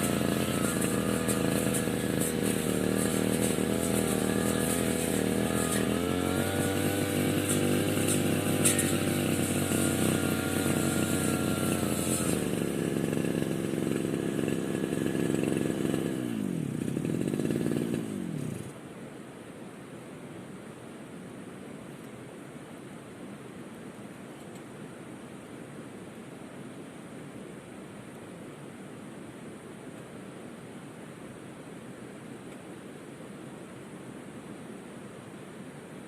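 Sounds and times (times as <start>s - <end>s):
brush cutter engine running: 0.0s - 18.7s.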